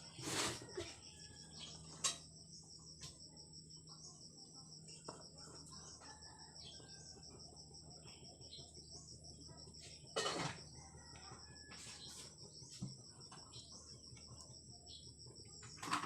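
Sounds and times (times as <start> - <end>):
cricket chirping: 0.0 - 16.0.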